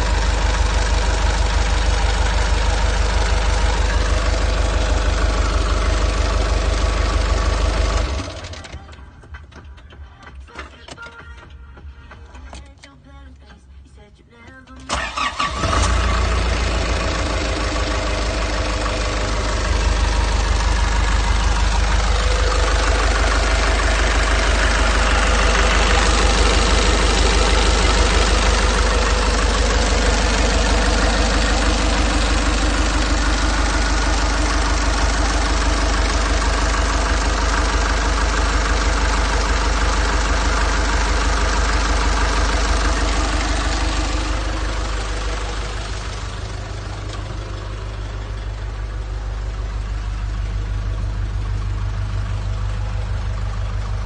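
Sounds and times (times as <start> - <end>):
diesel engine idling: 0.0 - 13.5, 14.4 - 54.0.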